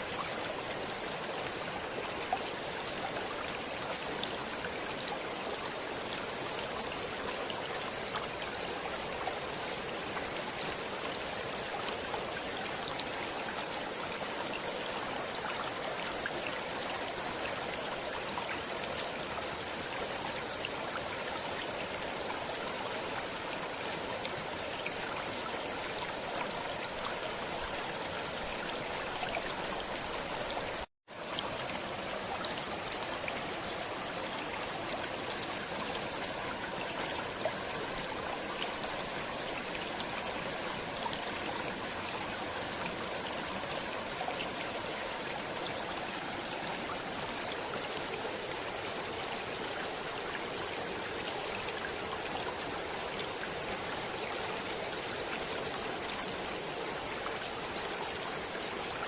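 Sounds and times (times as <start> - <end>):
stream water over rocks: 0.0 - 59.0.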